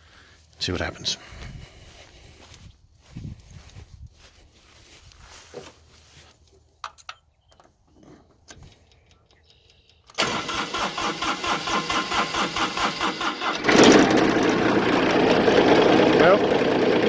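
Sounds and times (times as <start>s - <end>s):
diesel engine cranking: 10.0s - 17.0s
diesel engine running: 10.2s - 17.0s.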